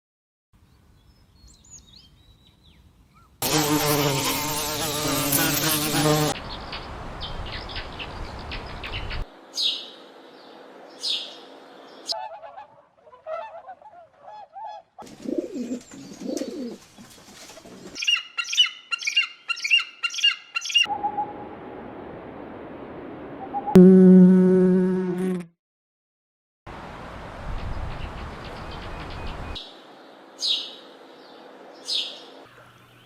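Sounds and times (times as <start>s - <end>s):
rapid bird chirps: 18.0s - 20.9s.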